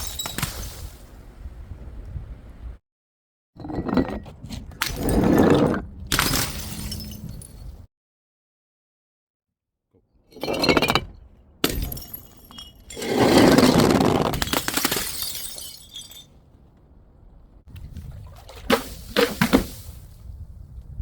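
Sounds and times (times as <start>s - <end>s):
glass bottles smashing: 0.0s - 0.9s, 6.1s - 7.8s, 10.4s - 16.4s
glass shards scattering: 0.0s - 0.9s, 6.1s - 7.9s, 11.6s - 13.7s, 14.4s - 16.4s.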